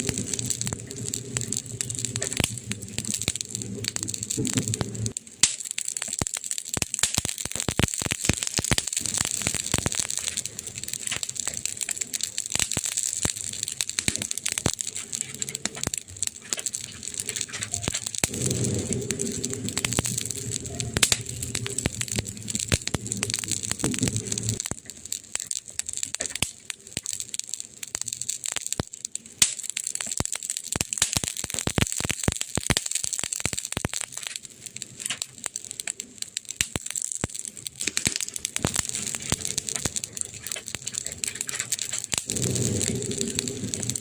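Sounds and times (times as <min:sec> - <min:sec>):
burning wood crackling: 0:00.0 - 0:44.0
low hum: 0:17.7 - 0:24.6.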